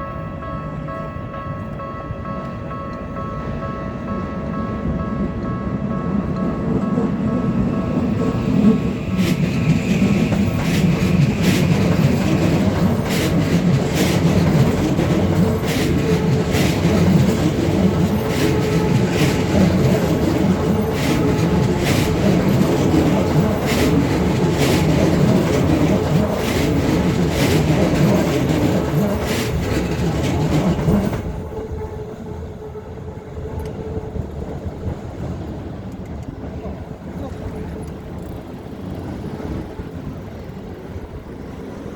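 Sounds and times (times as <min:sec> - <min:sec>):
train rumbling past: 0:00.0 - 0:41.9
train wheels clacking on rail joints: 0:05.4 - 0:31.7.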